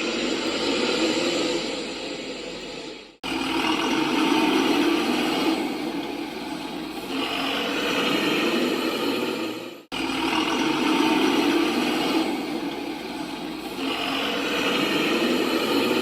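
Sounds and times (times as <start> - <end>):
truck engine running: 3.2 - 16.0.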